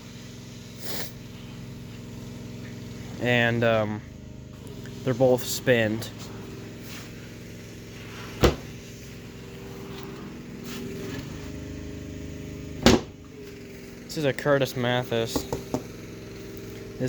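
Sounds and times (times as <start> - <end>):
low mechanical hum: 0.0 - 17.0
sharp knocks: 12.8 - 13.2.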